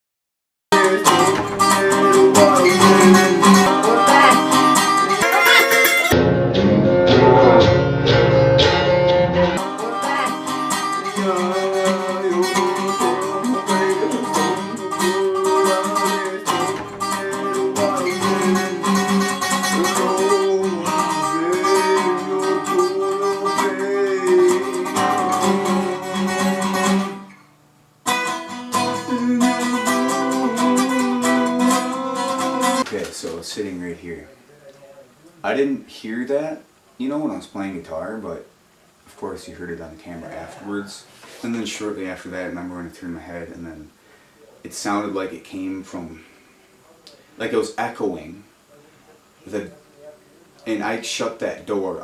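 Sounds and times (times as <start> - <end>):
acoustic guitar plucked and strummed: 0.7 - 33.4.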